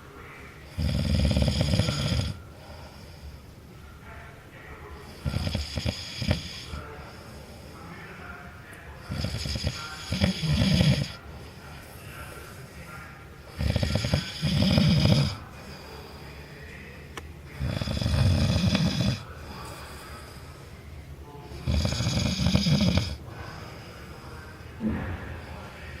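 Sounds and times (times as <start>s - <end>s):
quiet breathing: 0.0s - 26.0s
man snoring loudly: 0.7s - 2.4s, 5.2s - 6.7s, 9.1s - 11.2s, 13.6s - 15.4s, 17.6s - 19.3s, 21.6s - 23.2s.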